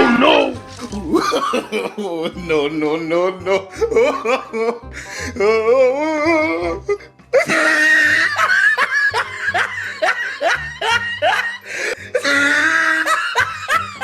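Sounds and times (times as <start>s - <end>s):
high-pitched laughter: 7.4s - 11.6s.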